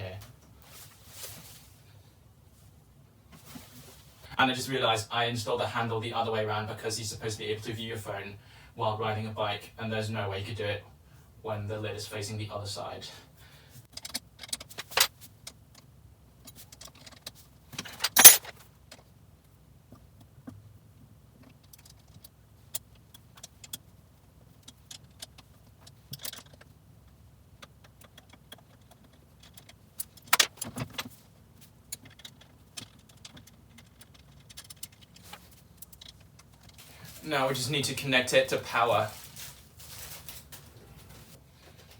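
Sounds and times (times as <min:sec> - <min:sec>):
metallic clinks of tools: 0:18.1 - 0:18.4.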